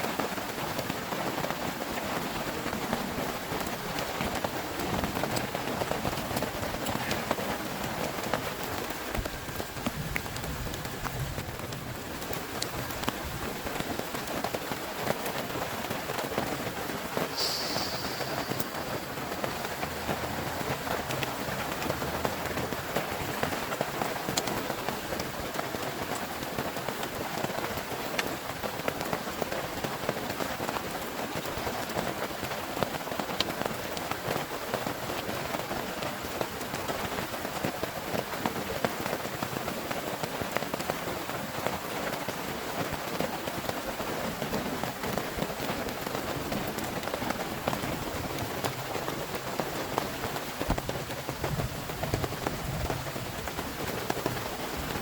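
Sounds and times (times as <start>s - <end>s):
heavy rain falling: 0.0s - 55.0s
sharp single drop hits: 17.3s - 19.1s.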